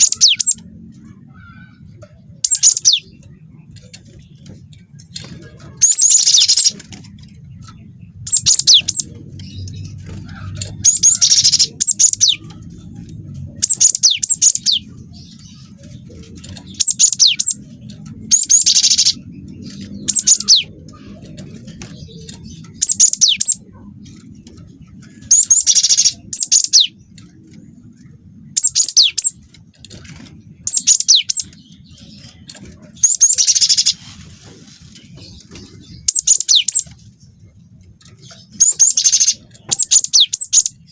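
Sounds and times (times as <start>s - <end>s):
faint low hum: 0.0s - 40.9s
bird singing whistles and trills: 2.4s - 3.3s, 8.2s - 9.8s, 13.6s - 15.4s, 25.2s - 27.0s, 28.5s - 29.4s, 30.6s - 32.3s, 35.4s - 37.0s, 38.3s - 40.9s.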